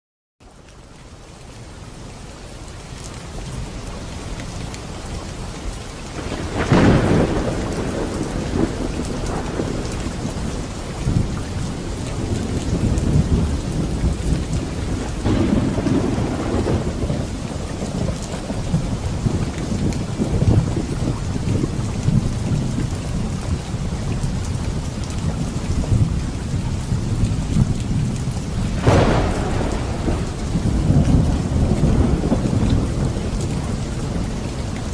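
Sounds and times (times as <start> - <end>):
heavy rain pouring: 0.5 - 34.9
rolling thunder: 6.1 - 23.7, 25.3 - 34.9
sharp thunderclap: 6.2 - 22.5, 27.4 - 34.3.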